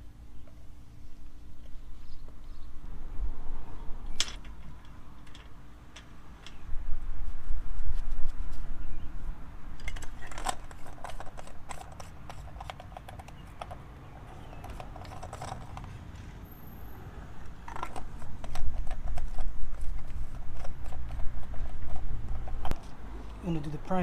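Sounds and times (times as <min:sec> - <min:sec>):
tools and parts clicking: 0:04.2 - 0:06.6, 0:09.8 - 0:16.0, 0:17.4 - 0:23.0.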